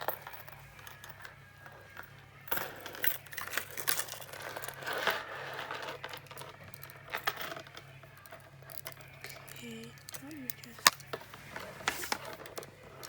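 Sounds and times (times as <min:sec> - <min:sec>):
rustling: 0:09.4 - 0:13.0.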